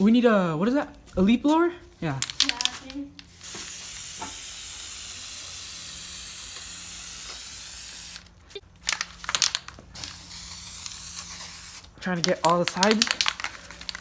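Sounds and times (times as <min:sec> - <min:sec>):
aerosol can spraying: 0:02.5 - 0:08.3, 0:10.0 - 0:13.0.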